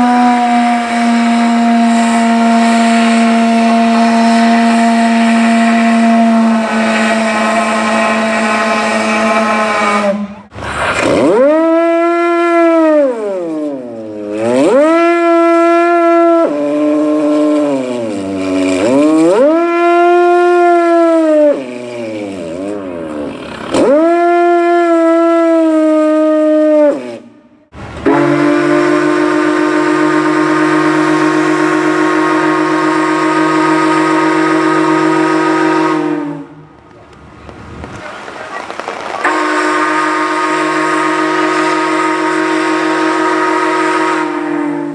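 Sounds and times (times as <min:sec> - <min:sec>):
boat whistle blast: 0:00.0 - 0:10.5, 0:11.2 - 0:21.8, 0:23.8 - 0:27.3, 0:28.0 - 0:36.7, 0:39.2 - 0:44.9
siren wailing: 0:00.0 - 0:10.5.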